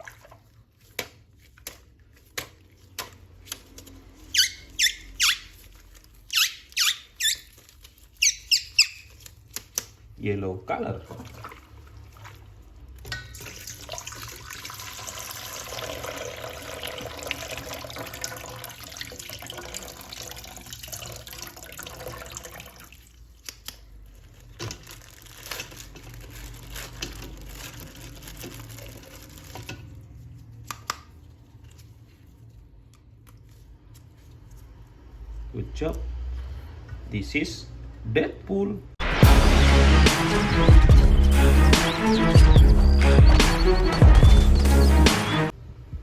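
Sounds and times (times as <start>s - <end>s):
tap water splashing in sink: 11.0s - 23.0s.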